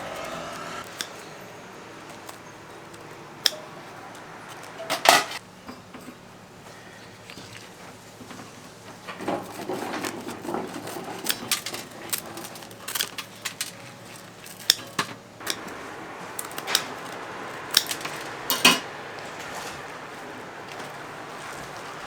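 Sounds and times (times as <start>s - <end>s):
metal molds and utensils clinking: 9.2s - 15.8s, 16.4s - 19.9s.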